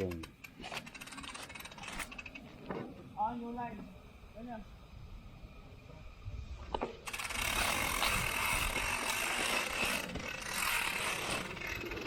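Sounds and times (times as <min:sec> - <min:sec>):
bicycle hub ratcheting buzz: 0:00.0 - 0:02.5, 0:07.0 - 0:12.0.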